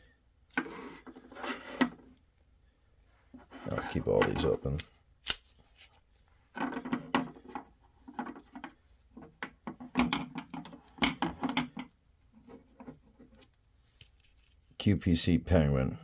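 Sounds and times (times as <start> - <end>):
folding knives clicking open: 5.2 - 5.4.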